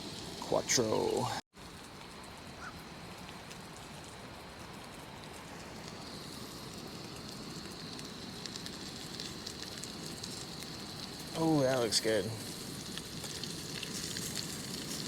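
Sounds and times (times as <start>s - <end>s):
fish fillets sizzling in a pan: 3.9s - 15.0s.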